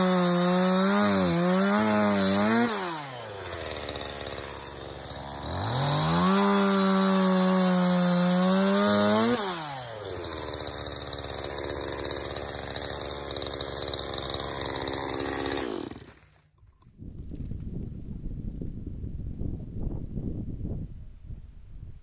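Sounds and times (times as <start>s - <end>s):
chainsaw cutting wood: 0.0s - 16.5s.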